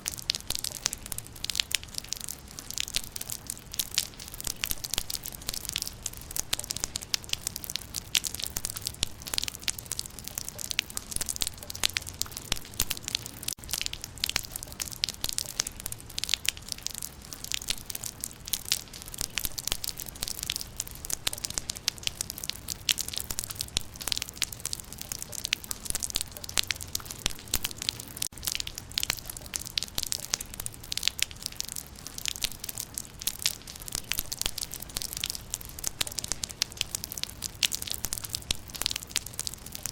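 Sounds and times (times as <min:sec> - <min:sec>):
raindrops pattering on leaves: 0:00.0 - 0:39.9.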